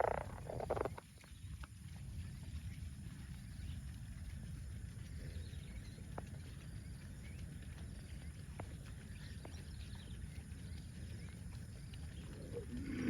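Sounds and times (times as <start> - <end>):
low steady rumble: 0.0 - 13.0
cow grunting call: 12.6 - 13.0.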